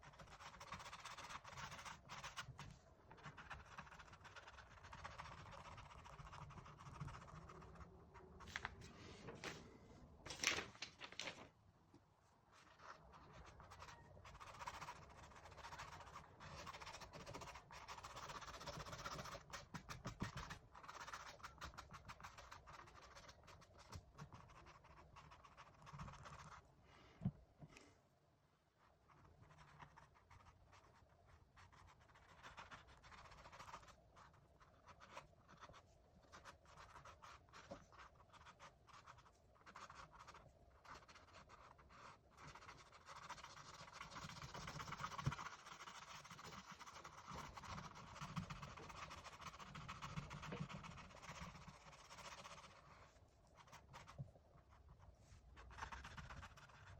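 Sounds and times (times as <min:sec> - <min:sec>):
paintbrush strokes on canvas: 0:28.8 - 0:56.9.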